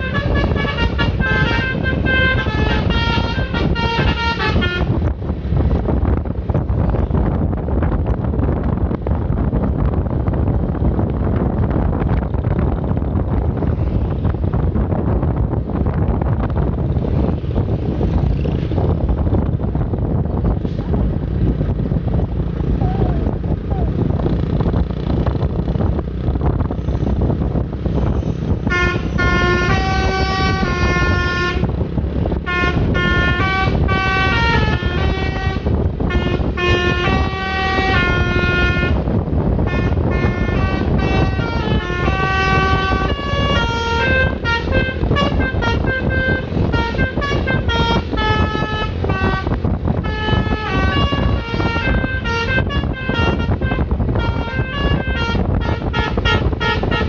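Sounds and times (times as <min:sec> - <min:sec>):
multi-note bus horn melody: 0:00.0 - 0:05.2, 0:28.0 - 0:57.0
road and engine noise: 0:00.0 - 0:57.0.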